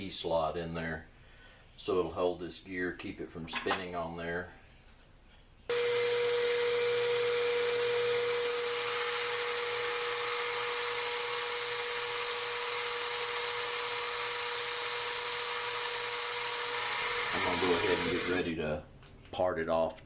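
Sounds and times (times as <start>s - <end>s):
metal lathe whining: 5.7s - 18.5s.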